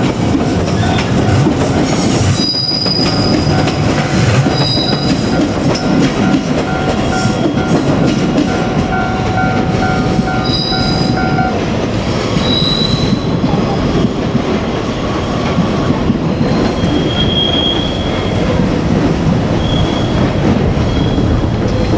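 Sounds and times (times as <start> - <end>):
train wheels rumbling on rail: 0.0 - 21.9
high-pitched wheel squeals: 0.7 - 7.8, 9.0 - 11.5, 12.4 - 13.4, 16.3 - 18.4, 19.6 - 21.5.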